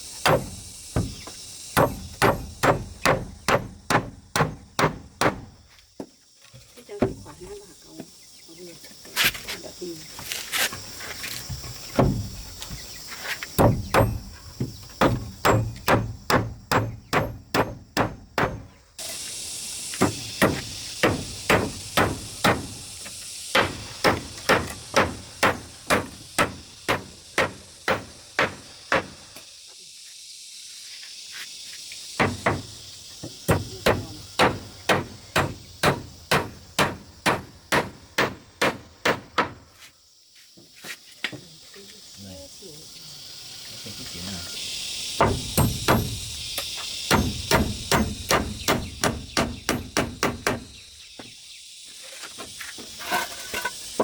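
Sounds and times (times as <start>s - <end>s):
insects buzzing: 0.0s - 54.0s
hand tool striking wood: 0.2s - 5.6s, 11.4s - 18.8s, 20.0s - 29.4s, 32.2s - 39.7s, 45.2s - 50.7s.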